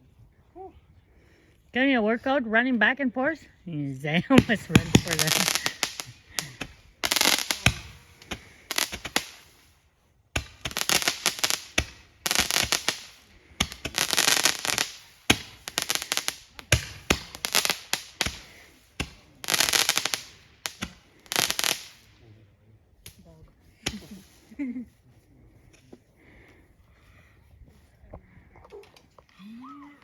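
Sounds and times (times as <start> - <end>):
fireworks crackling pops: 4.3 - 22.3, 23.0 - 24.5.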